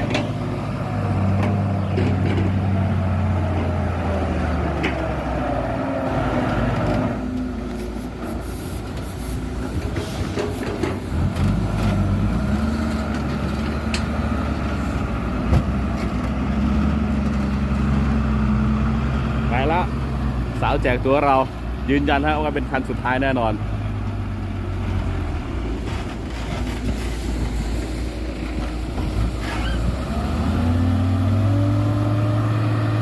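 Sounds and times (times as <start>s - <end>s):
heavy diesel truck engine: 0.0s - 33.0s
hiss: 7.8s - 11.2s, 26.8s - 28.5s.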